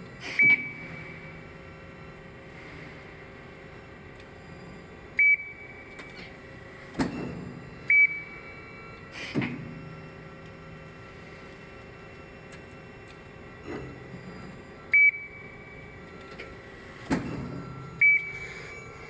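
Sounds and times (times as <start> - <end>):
machine clunk: 0.2 - 1.2, 5.9 - 7.7, 9.2 - 9.8, 16.0 - 18.5
short electronic beeps: 0.4 - 1.2, 7.9 - 8.5, 18.0 - 19.0.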